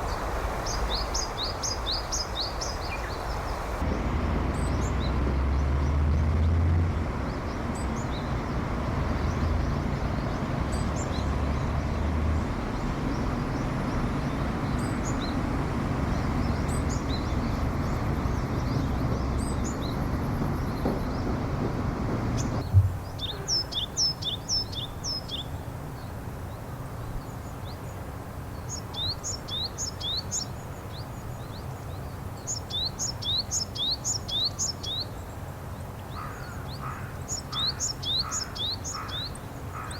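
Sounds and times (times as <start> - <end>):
bird calling high notes: 23.1 - 24.2.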